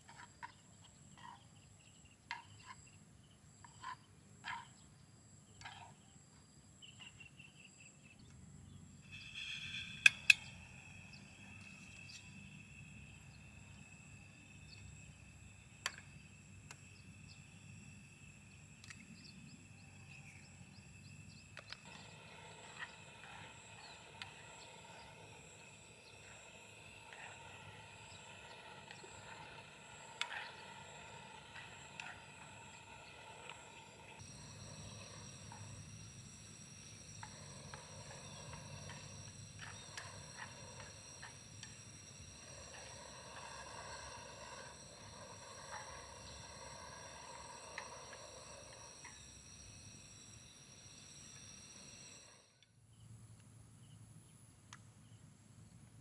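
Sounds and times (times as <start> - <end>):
crickets trilling: 0.0 - 55.7
sharp clicks and taps: 10.0 - 10.5.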